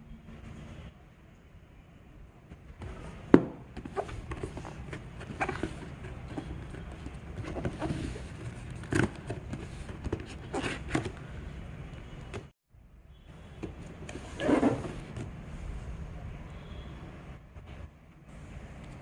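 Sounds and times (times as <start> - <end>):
knocks and rustles of packaging: 2.8 - 11.4.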